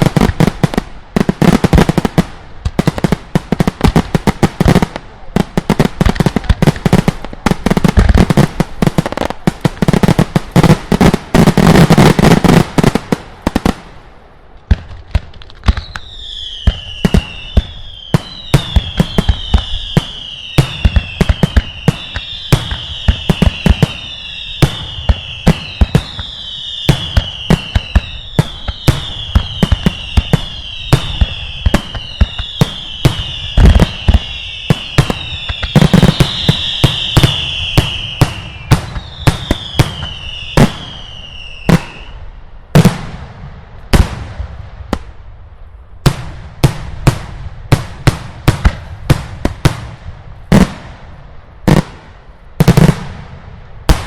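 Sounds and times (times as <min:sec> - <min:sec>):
fireworks banging and crackling: 0:00.0 - 0:54.0
firework whistles falling in pitch: 0:15.7 - 0:42.2.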